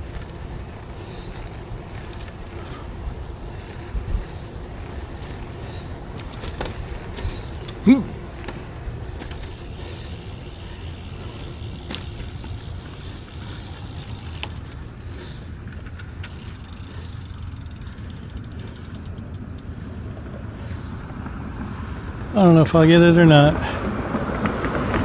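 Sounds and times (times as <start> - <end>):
tyres and wind rumble: 0.0 - 25.0
clicks and fast ticks: 8.4 - 19.8.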